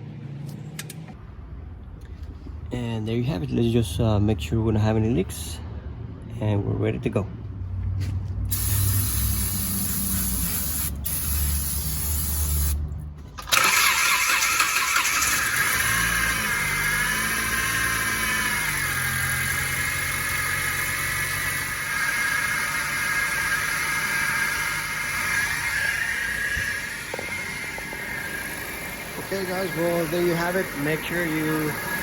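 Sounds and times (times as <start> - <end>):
high whining belt squeal: 13.6 - 32.0
car engine running: 14.8 - 32.0.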